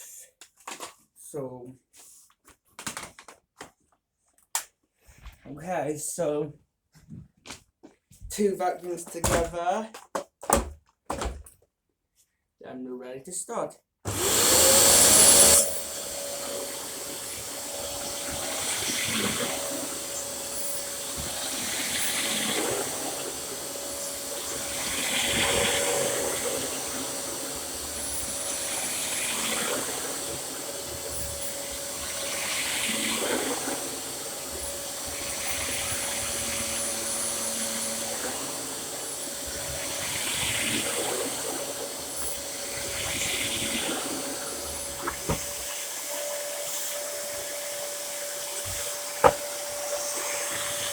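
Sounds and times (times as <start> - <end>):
vacuum cleaners running: 14.1 - 50.9.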